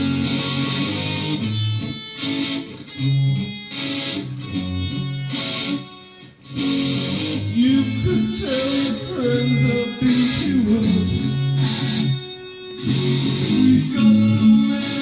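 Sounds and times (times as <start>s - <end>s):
electric guitar chords: 0.0s - 15.0s
low bass notes: 7.5s - 12.2s.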